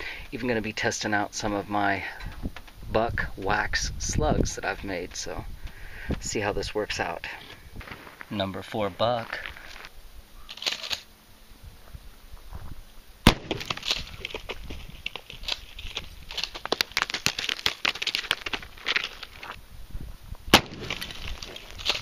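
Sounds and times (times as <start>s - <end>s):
crackling rustling noise: 7.5s - 11.1s, 11.7s - 22.0s
shotgun blasts: 13.2s - 14.0s, 20.5s - 22.0s.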